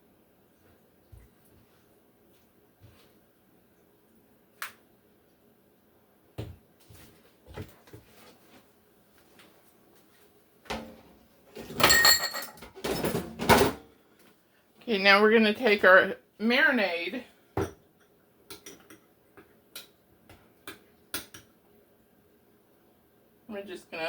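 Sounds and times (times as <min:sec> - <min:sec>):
kitchen items clattering: 0:10.7 - 0:13.9.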